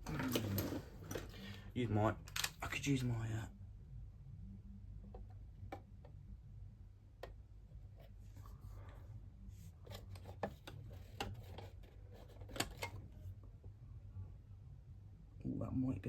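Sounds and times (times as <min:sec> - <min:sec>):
plastic parts clicking: 0:09.9 - 0:13.0.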